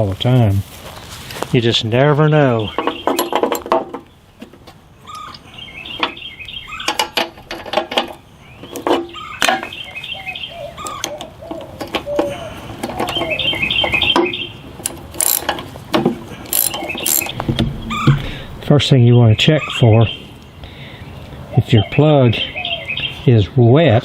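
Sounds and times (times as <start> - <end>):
birds chirping: 1.6 - 24.0
hand tools clicking on metal: 14.8 - 15.7, 16.4 - 18.6.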